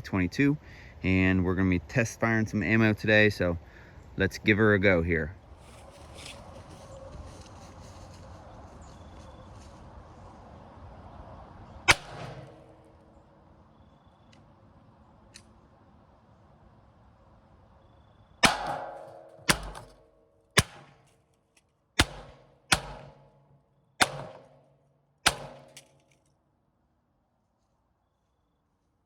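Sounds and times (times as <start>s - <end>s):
rifle shots with echo: 11.9s - 12.9s, 18.4s - 21.1s, 22.0s - 25.9s.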